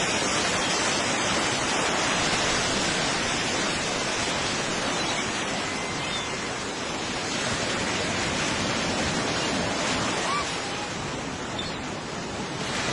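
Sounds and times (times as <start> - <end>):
sea surf rushing: 0.0 - 12.9.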